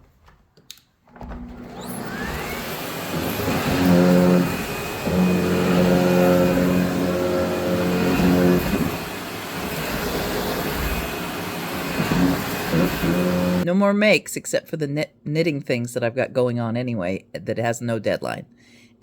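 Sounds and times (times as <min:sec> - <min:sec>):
vacuum cleaner motor whine: 0:01.2 - 0:13.6.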